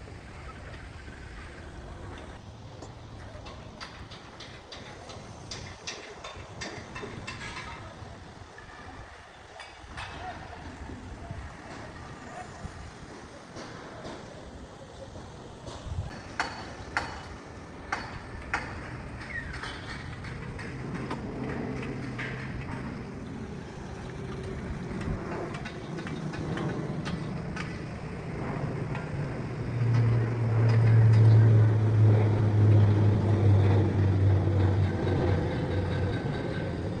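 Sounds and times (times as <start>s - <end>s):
metal clanks and knocks: 3.4s - 7.9s
heavy machine engine humming: 10.4s - 37.0s.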